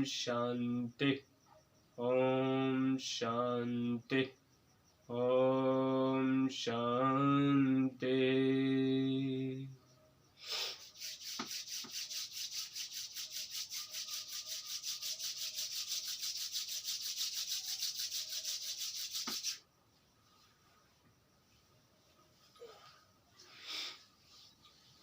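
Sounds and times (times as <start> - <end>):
brisk rhythmic rubbing: 10.8 - 19.6.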